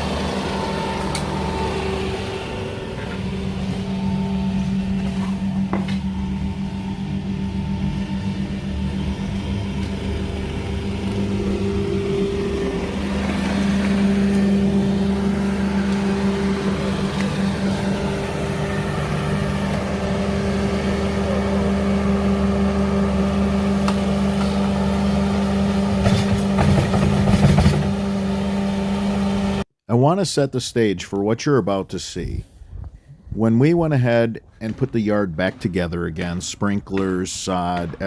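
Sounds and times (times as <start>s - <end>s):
engine running steadily: 0.0s - 29.6s
knocks and clatters: 26.0s - 28.0s.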